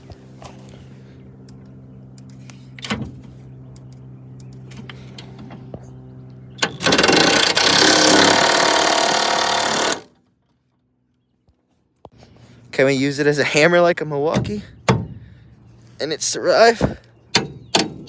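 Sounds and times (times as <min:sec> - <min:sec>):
steady low hum: 0:00.0 - 0:18.0
impact wrench hammering on bolt: 0:06.6 - 0:10.1.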